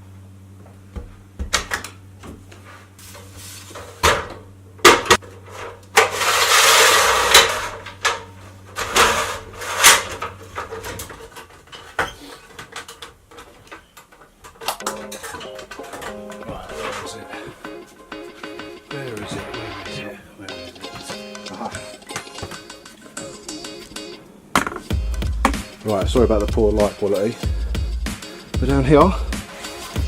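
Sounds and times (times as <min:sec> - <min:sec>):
sliding scrape: 0:05.4 - 0:07.8, 0:08.7 - 0:12.5
clattering knocks and clicks: 0:07.3 - 0:17.1.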